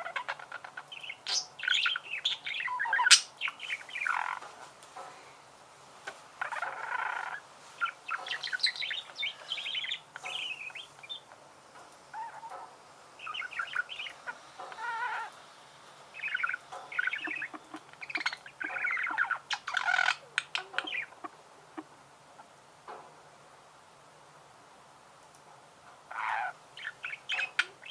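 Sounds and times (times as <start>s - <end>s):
budgerigars warbling and chirping: 0.0s - 4.4s, 6.4s - 11.3s, 12.1s - 15.3s, 16.2s - 22.5s, 26.1s - 27.9s.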